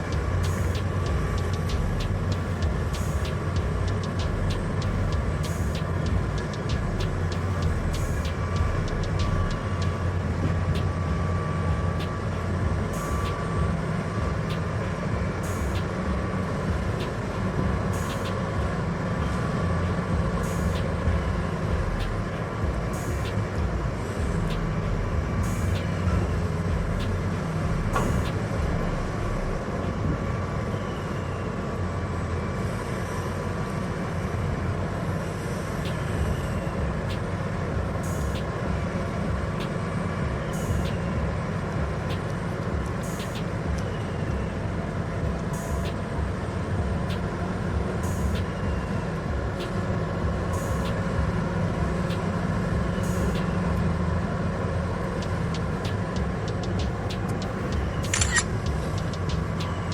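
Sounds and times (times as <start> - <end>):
diesel machinery engine drone: 0.0 - 59.9
short sharp clicks: 55.9 - 59.9.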